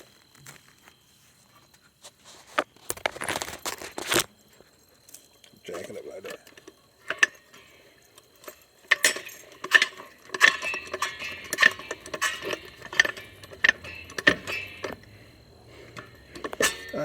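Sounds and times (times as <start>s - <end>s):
car jack metallic clinks: 5.7s - 17.0s.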